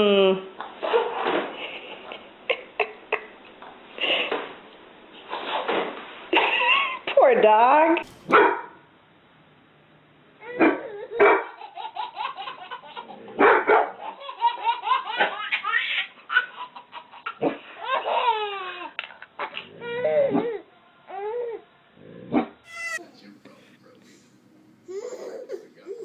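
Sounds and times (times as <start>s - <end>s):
dog barking: 8.3s - 8.8s, 10.6s - 11.6s, 13.4s - 14.0s
baby laughing: 10.4s - 13.2s, 14.0s - 20.5s, 22.7s - 23.1s, 24.9s - 26.0s.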